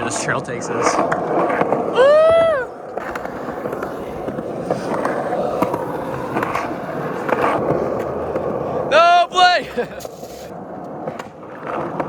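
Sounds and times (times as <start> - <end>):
skateboard wheels rolling on pavement: 0.0 - 12.0
high-pitched whoop: 1.9 - 2.9.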